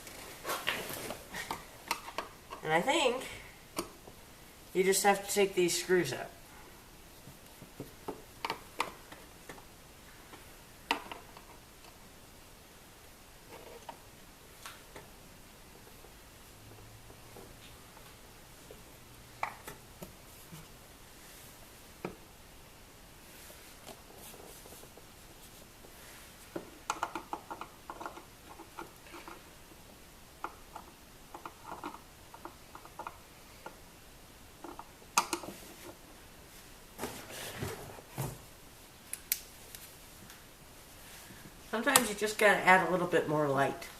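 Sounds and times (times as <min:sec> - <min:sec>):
rustling: 0:00.0 - 0:02.7, 0:23.2 - 0:29.8, 0:34.6 - 0:42.0.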